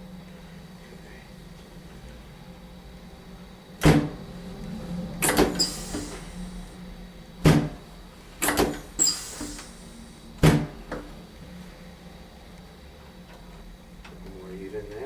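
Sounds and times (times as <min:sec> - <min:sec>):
brief hiss: 0:05.2 - 0:06.7, 0:09.0 - 0:10.2.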